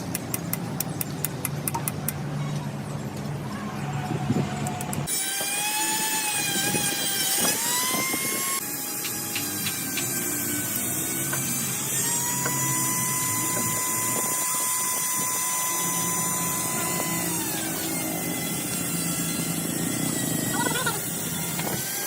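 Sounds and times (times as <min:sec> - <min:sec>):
power tool whine: 0:04.7 - 0:22.0.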